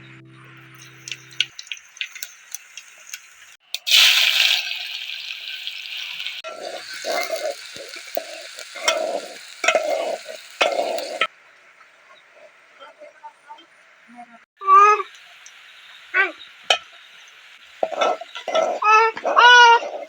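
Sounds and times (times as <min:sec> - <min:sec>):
food sizzling in oil: 0:00.8 - 0:11.3, 0:14.6 - 0:20.0
stirring scrapes: 0:17.8 - 0:20.0.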